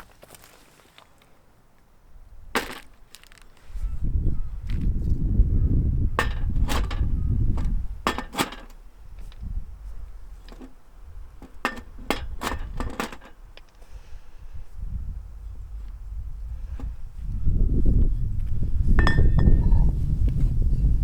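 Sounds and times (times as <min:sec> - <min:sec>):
hard objects clicking and knocking: 0:02.6 - 0:03.5, 0:06.2 - 0:09.4, 0:10.4 - 0:10.8, 0:11.4 - 0:13.8
low rumble: 0:14.6 - 0:21.0.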